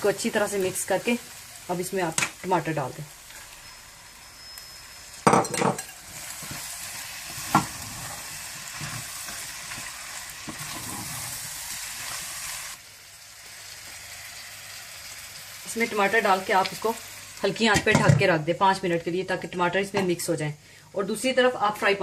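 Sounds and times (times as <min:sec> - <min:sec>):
food sizzling in a pot: 0:00.0 - 0:20.2.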